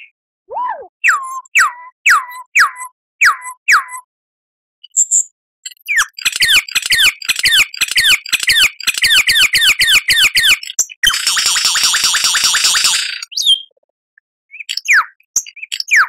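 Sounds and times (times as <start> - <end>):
lyrebird whistling song: 0.0 - 4.1, 4.8 - 13.8, 14.5 - 16.0
harsh bird rattling: 6.0 - 13.3.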